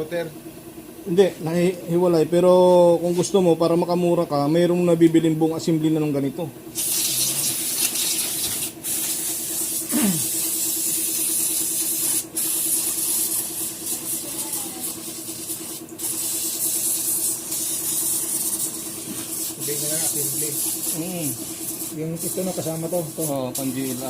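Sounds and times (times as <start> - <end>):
low pulsing hum: 0.0 - 24.0
pressurised spraying hiss: 6.7 - 24.0.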